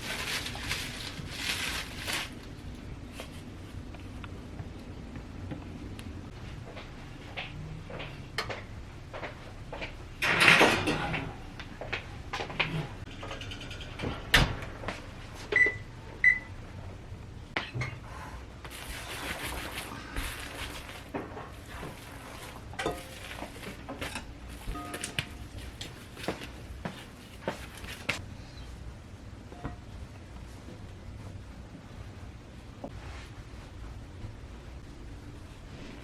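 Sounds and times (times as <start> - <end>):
things being moved and set down: 0.0 - 3.4, 18.7 - 28.2
appliance keypad beeps: 15.5 - 16.5.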